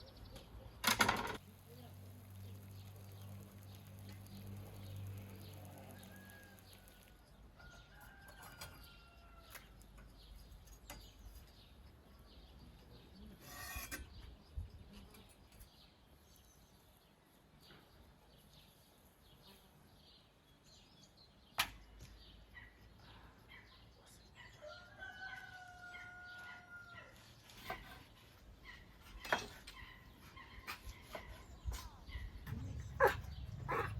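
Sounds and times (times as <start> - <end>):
faint farmyard ambience: 0.0 - 33.9
rooster crowing: 5.8 - 9.5, 24.6 - 27.2.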